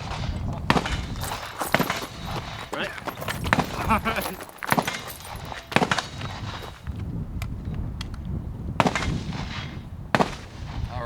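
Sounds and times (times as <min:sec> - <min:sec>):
gunshots: 0:00.0 - 0:06.8, 0:08.8 - 0:10.9.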